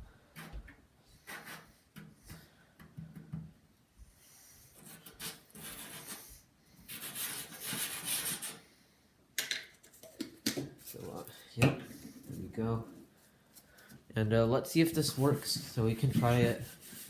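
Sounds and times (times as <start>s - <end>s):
sponge rubbing on panel: 4.7s - 8.6s, 15.0s - 17.0s.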